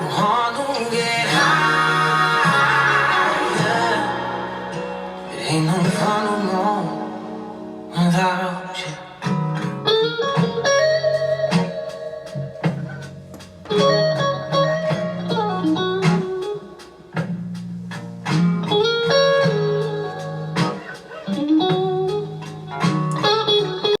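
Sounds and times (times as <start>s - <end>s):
guitar-led instrumental music: 0.0s - 24.0s.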